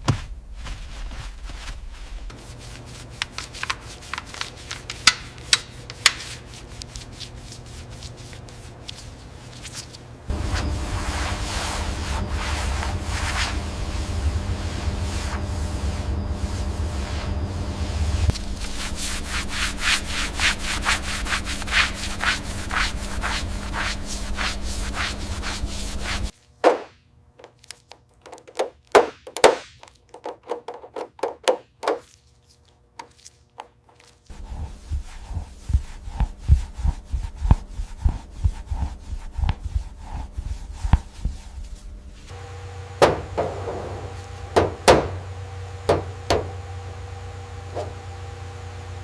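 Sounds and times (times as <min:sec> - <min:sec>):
steady low hum: 0:00.1 - 0:26.4, 0:34.3 - 0:49.0
rhythmic rubbing strokes: 0:01.0 - 0:26.4, 0:34.3 - 0:42.4.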